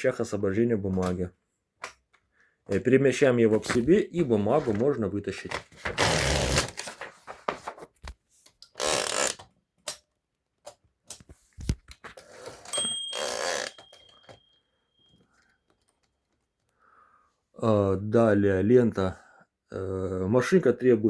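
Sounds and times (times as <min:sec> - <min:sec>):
paper sliding out of typewriter: 0:05.6 - 0:07.8.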